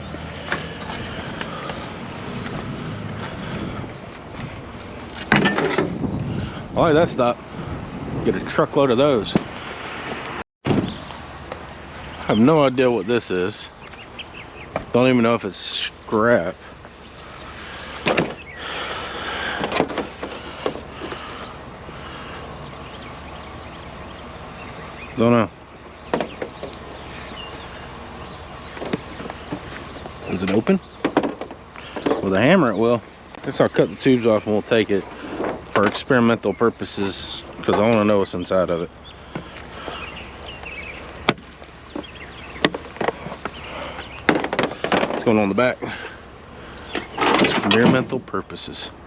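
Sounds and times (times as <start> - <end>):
vehicle engine rumble: 0.0 - 49.0
wind noise on microphone: 1.1 - 11.1
loud clunk: 5.2 - 6.0
scrap metal knocks and clanks: 5.2 - 6.0, 41.3 - 45.3, 46.9 - 48.2.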